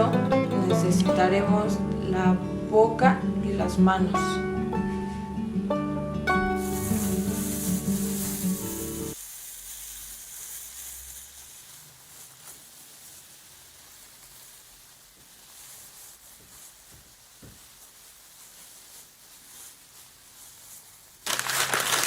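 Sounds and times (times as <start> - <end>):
background music: 0.0 - 9.2
plastic bag rustling: 6.5 - 22.0.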